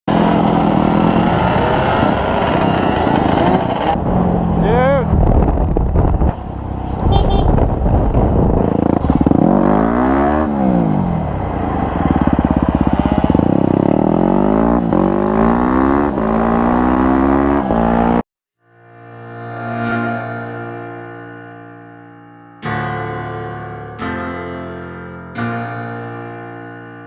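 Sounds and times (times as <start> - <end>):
dirt bike engine revving: 0.1 - 4.0, 6.6 - 18.2.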